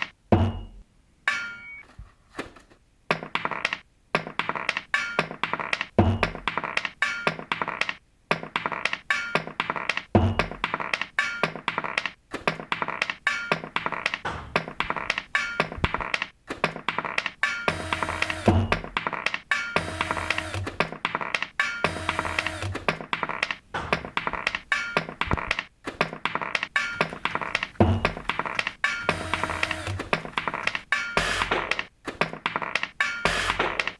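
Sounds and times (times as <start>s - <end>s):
rhythmic knocks and thunks beat: 0.0s - 0.8s, 3.1s - 33.9s.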